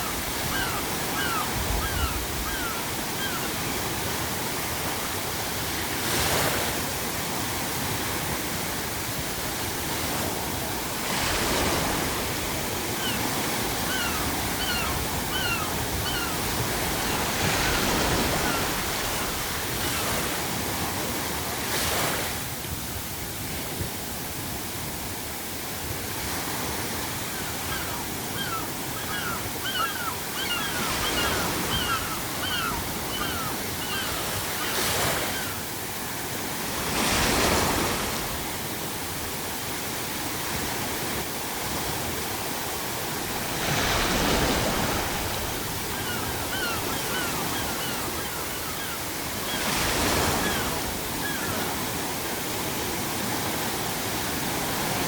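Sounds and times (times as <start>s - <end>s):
seagulls calling: 0.0s - 4.9s, 11.3s - 20.2s, 27.1s - 35.7s, 43.7s - 52.0s
ocean waves breaking: 0.0s - 55.0s.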